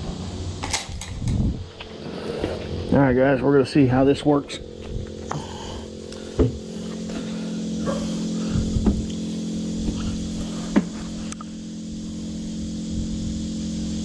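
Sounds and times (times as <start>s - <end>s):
electric pump humming: 0.0s - 14.0s
knocks against pump: 6.4s - 6.6s.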